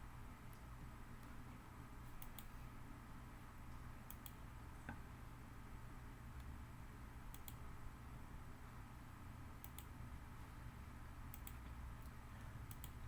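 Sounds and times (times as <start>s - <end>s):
low steady hum: 0.0s - 13.0s
computer mouse clicking: 2.1s - 2.5s, 3.7s - 5.0s, 7.3s - 7.6s, 9.6s - 9.9s, 11.3s - 13.0s.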